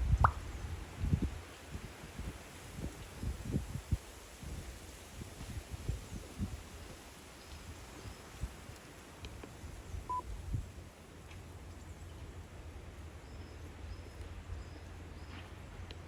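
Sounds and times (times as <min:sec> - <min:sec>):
wind rumbling on microphone: 0:00.0 - 0:10.9.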